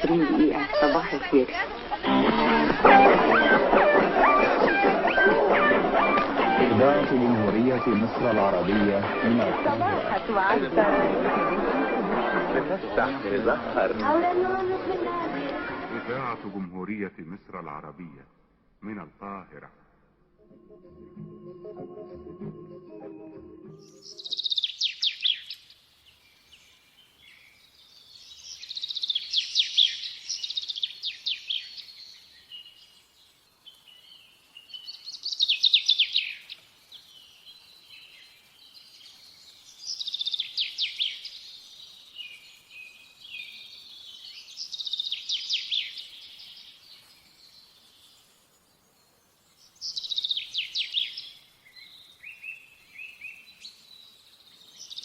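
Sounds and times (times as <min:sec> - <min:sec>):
songbird trilling: 0:00.0 - 0:11.9, 0:23.8 - 0:25.7, 0:27.2 - 0:32.9, 0:33.6 - 0:48.2, 0:49.7 - 0:55.0.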